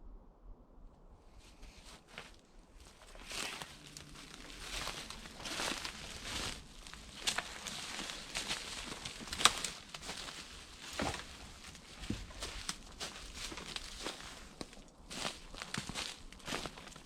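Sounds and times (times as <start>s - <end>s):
leaves and twigs rustling: 1.4s - 17.0s
twig snapping: 3.1s - 14.0s.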